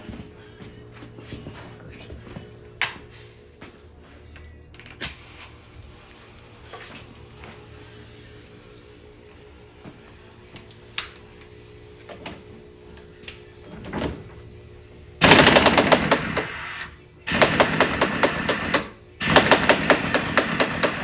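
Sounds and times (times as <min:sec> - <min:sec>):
impact wrench hammering: 0:15.2 - 0:21.0.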